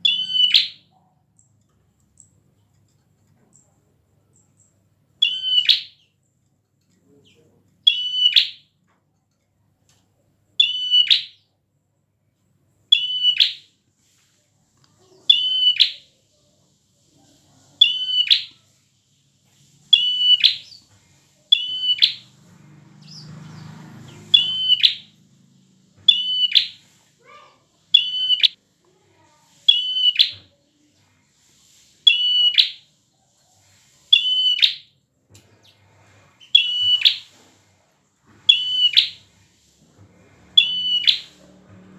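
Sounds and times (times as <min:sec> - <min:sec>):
bird giving sharp calls: 0:00.0 - 0:00.8, 0:05.2 - 0:06.0, 0:12.9 - 0:13.7, 0:15.3 - 0:16.0, 0:17.8 - 0:18.6, 0:19.9 - 0:20.9, 0:21.5 - 0:22.4, 0:23.0 - 0:25.4, 0:26.0 - 0:28.6, 0:29.7 - 0:30.4, 0:32.1 - 0:32.9, 0:34.1 - 0:34.9, 0:36.4 - 0:37.4, 0:38.5 - 0:39.3, 0:40.5 - 0:41.5.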